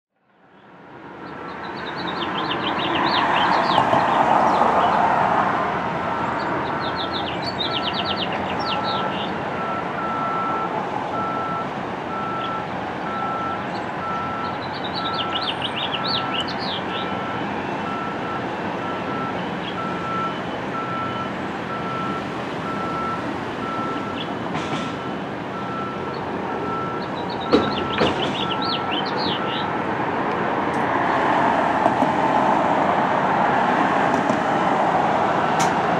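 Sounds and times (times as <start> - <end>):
vehicle noise: 0.2 - 35.9
birds chirping: 0.6 - 5.1, 6.2 - 9.4, 12.2 - 17.3, 19.6 - 20.5, 23.8 - 24.4, 26.0 - 29.7
reversing alarm beeping: 6.7 - 29.7.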